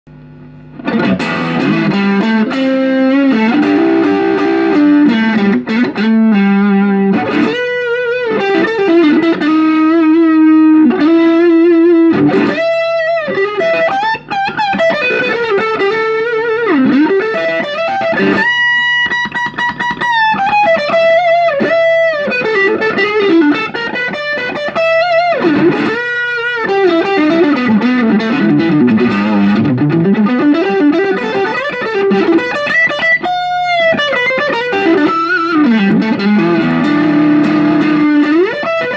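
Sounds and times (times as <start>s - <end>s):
electric guitar lead melody: 0.1s - 38.9s.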